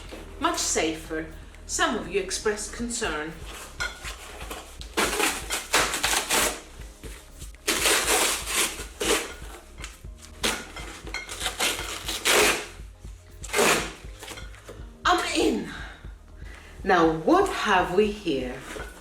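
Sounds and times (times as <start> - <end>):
cardboard box tearing and rustling: 4.2 - 6.7, 7.7 - 9.6, 11.4 - 12.8, 13.4 - 14.3.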